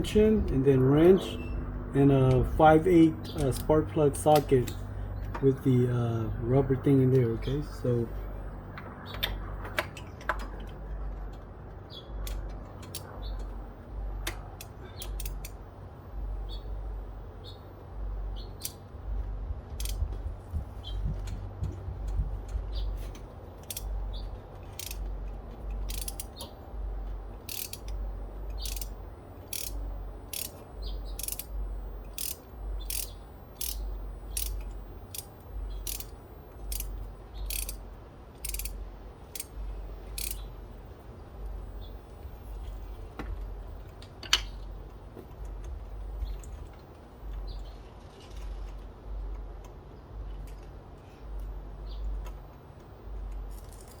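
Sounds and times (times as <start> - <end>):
ratchet wrench clicking: 12.2 - 13.1, 14.2 - 15.6, 19.8 - 20.1, 23.1 - 24.0, 24.6 - 25.1, 25.7 - 26.5, 27.4 - 37.8, 38.4 - 40.5, 53.4 - 54.0.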